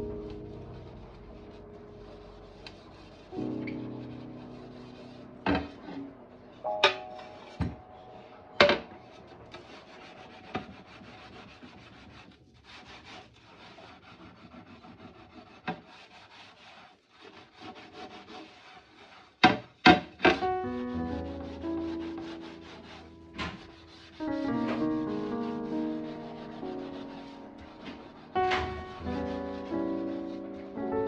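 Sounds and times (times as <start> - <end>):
scrubbing an oven: 0.0 - 7.8, 8.6 - 31.0.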